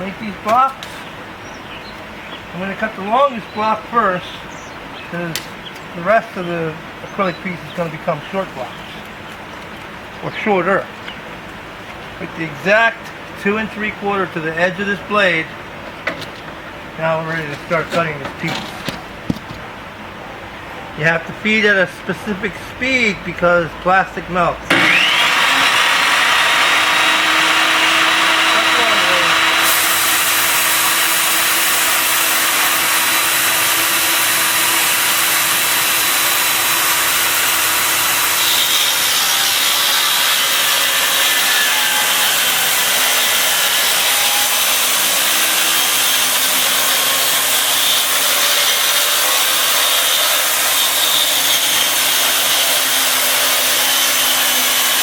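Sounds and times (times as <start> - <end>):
table saw cutting plastic: 24.7 - 55.0.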